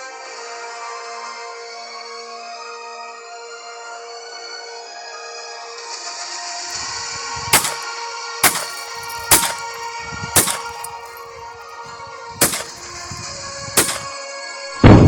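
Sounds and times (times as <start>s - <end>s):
pistol shots: 7.6s - 9.8s, 10.4s - 11.2s, 12.4s - 13.2s, 13.8s - 14.1s.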